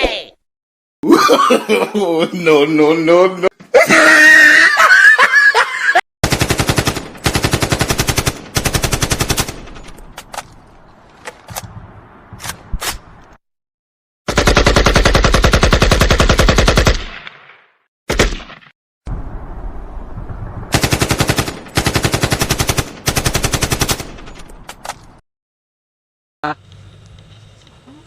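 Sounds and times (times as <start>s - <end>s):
automatic gunfire: 6.2s - 9.8s, 14.3s - 17.2s.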